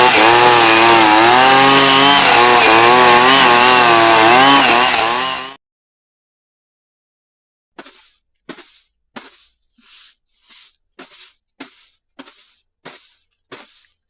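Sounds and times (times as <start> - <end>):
broom sweeping pavement: 7.8 - 14.0.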